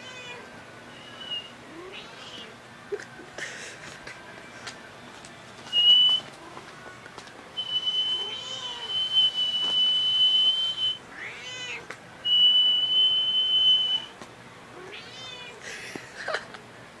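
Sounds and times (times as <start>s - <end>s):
cat meowing: 0.0s - 0.5s, 8.1s - 9.1s, 11.1s - 11.9s, 14.8s - 15.6s
man whistling high note: 7.6s - 8.3s, 8.9s - 11.0s, 12.3s - 14.1s.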